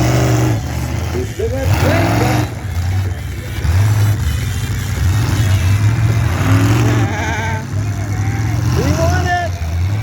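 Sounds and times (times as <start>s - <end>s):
car engines revving: 0.0s - 10.0s.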